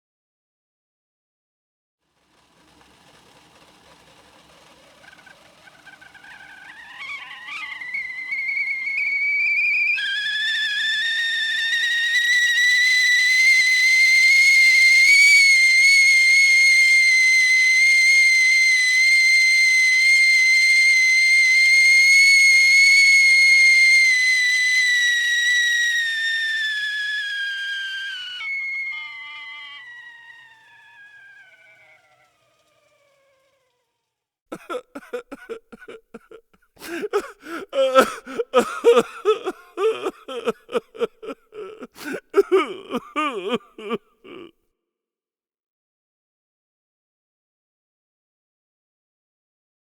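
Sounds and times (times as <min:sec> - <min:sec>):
kettle whistling: 0:04.8 - 0:31.4.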